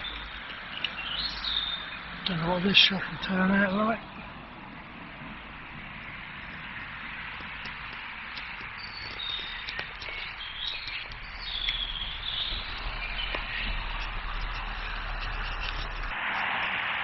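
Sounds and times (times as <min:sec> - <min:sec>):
birds singing whistled phrases: 0:00.0 - 0:02.5, 0:08.6 - 0:15.7
low rumble: 0:11.2 - 0:17.0.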